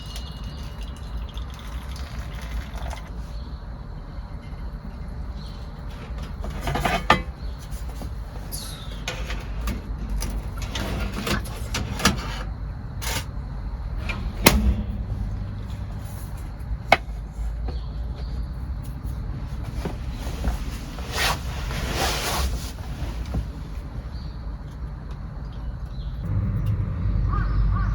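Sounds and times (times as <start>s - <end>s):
sharp knocks and clatters: 5.8s - 18.5s
steady low rumble: 9.4s - 27.9s.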